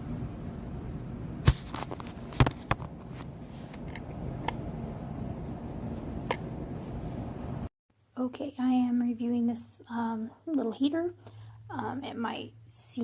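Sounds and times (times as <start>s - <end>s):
heater fan humming: 0.0s - 7.7s.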